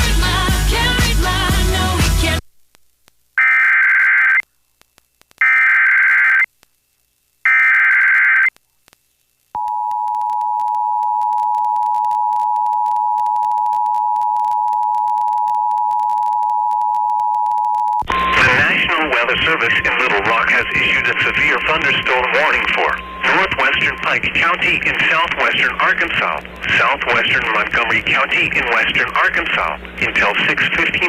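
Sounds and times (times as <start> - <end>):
two-tone attention signal: 18.0 - 18.9.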